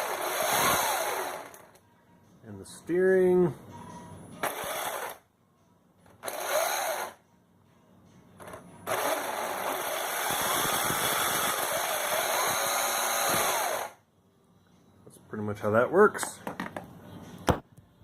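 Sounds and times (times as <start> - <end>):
small electric motors whining: 0.0 - 1.8, 4.4 - 5.2, 6.2 - 7.2, 8.9 - 14.0.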